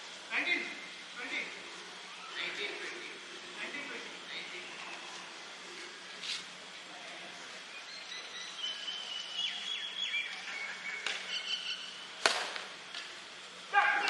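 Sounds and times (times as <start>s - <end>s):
birds chirping and calling: 7.3s - 12.2s.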